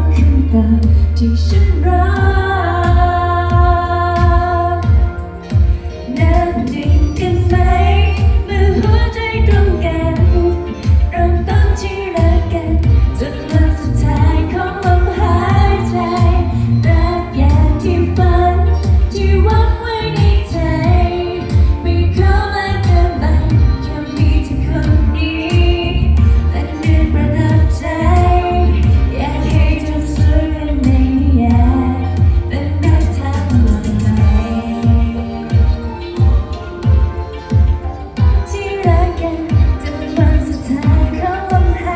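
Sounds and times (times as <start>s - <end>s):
amplified band with heavy bass: 0.0s - 41.9s
woman singing pop song: 0.0s - 41.9s.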